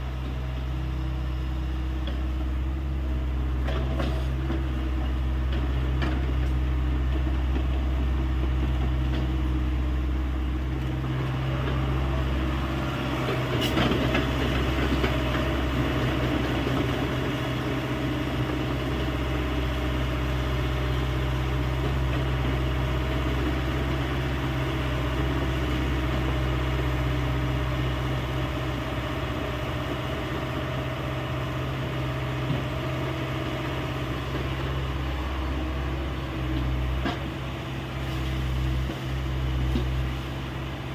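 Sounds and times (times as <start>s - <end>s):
excavator diesel engine running: 0.0s - 40.9s.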